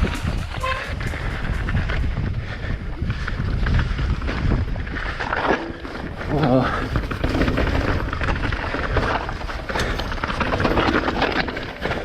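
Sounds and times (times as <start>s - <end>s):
bike rattling: 0.0s - 12.0s
wind rumbling on microphone: 0.0s - 12.0s
bike tyres crunching on rocks: 3.1s - 12.0s.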